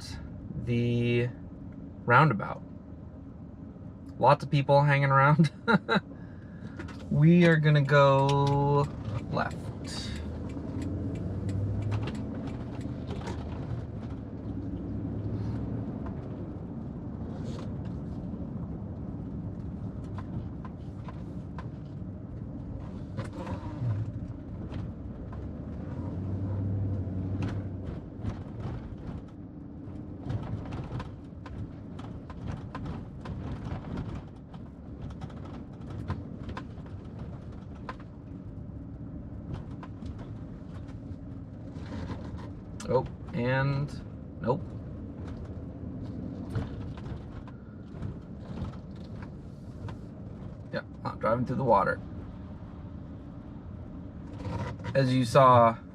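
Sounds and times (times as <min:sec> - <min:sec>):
car engine and road rumble: 0:00.0 - 0:55.9
small knocks and rattles: 0:08.2 - 0:14.5, 0:27.2 - 0:38.4, 0:44.6 - 0:50.7.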